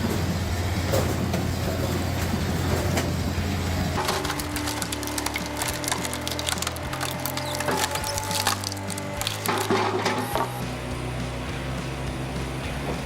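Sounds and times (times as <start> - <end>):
wood-splitting machine hum: 0.0 - 13.0
wood cracking and splintering: 0.9 - 10.6.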